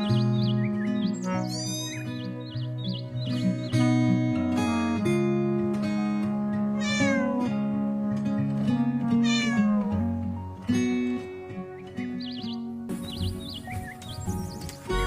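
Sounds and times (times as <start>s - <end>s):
background music: 0.0s - 15.0s
cat meowing: 1.2s - 2.2s, 6.8s - 7.5s, 9.2s - 10.0s.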